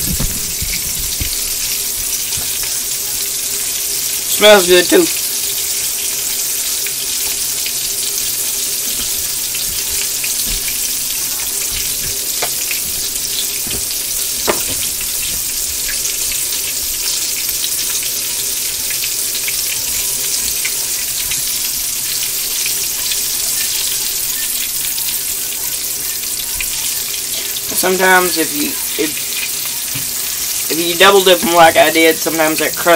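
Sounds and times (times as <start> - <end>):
oil popping: 0.0 - 2.9, 8.2 - 19.6
food frying in hot oil: 0.0 - 32.9.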